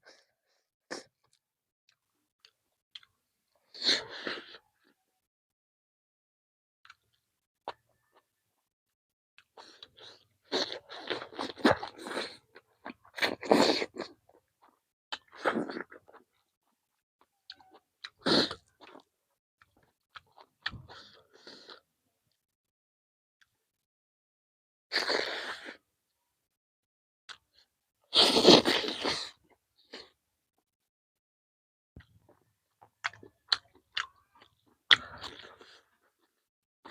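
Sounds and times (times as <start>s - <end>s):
crunching and chewing food: 9.4s - 22.4s, 32.0s - 36.9s.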